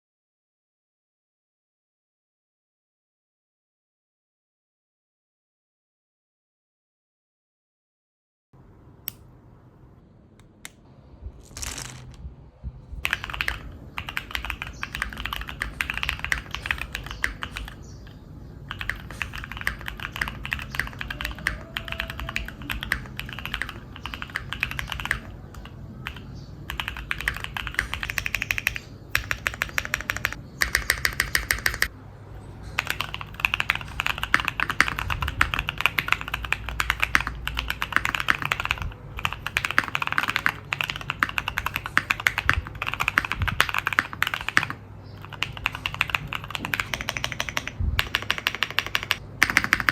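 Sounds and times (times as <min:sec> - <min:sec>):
mechanical keyboard typing: 0:13.0 - 0:31.9, 0:32.8 - 0:49.9.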